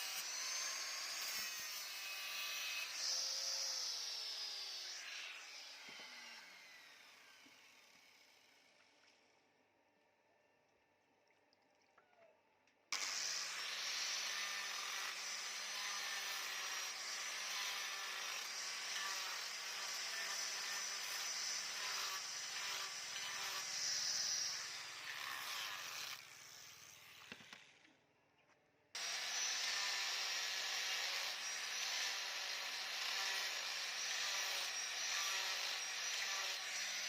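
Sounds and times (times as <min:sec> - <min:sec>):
electric grinder on steel: 0:00.0 - 0:08.8, 0:13.0 - 0:27.6, 0:29.0 - 0:37.0.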